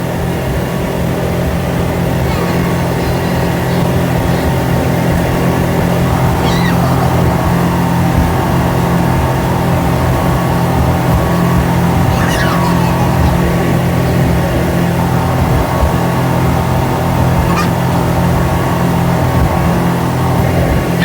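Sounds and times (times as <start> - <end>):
speedboat engine running: 0.0 - 21.0
high wavering voice-like sound: 2.0 - 8.4, 11.2 - 15.0, 17.4 - 17.8.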